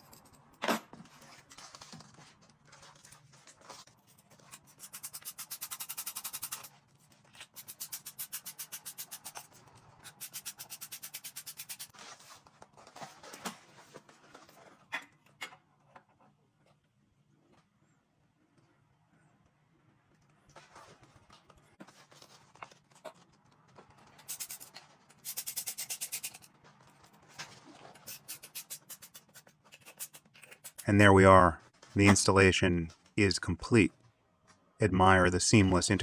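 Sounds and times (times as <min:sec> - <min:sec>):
ratchet wrench clicking: 0:04.8 - 0:06.7, 0:07.6 - 0:09.4, 0:10.1 - 0:11.9, 0:25.3 - 0:26.4.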